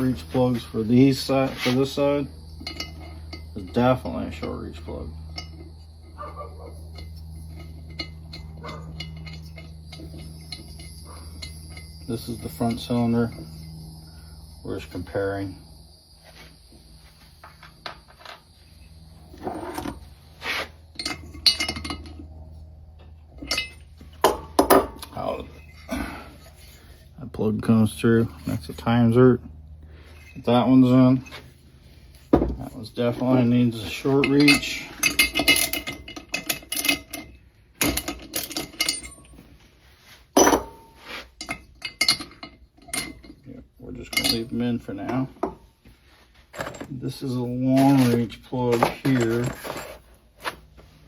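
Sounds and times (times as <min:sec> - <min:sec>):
metal parts clinking: 0:00.0 - 0:15.8, 0:16.6 - 0:27.0, 0:32.1 - 0:39.5, 0:40.3 - 0:45.7, 0:46.4 - 0:50.5
ringing metallic clinks: 0:00.0 - 0:20.1, 0:20.9 - 0:26.5, 0:32.2 - 0:39.6, 0:40.4 - 0:45.7.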